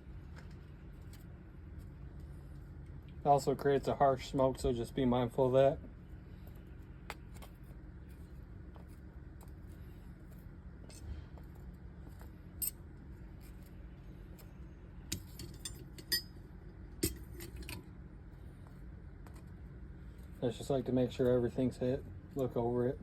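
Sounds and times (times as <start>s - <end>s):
steady low hum: 0.0s - 23.0s
light metallic clinks: 15.1s - 16.4s.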